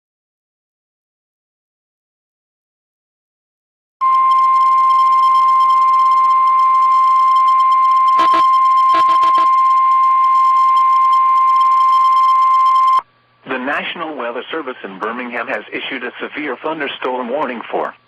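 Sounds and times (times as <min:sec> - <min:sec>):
high warning alarm tone: 0:04.0 - 0:13.0
static crackles: 0:08.1 - 0:09.6.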